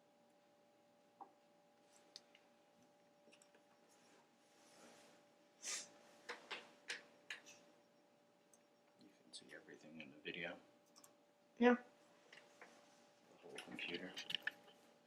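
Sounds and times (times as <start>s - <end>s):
sharp clicks: 14.2s - 14.6s.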